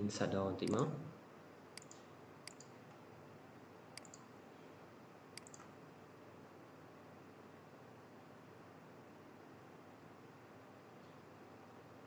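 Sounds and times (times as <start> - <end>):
computer mouse clicks: 1.8 - 3.0, 4.0 - 4.3, 5.4 - 5.8.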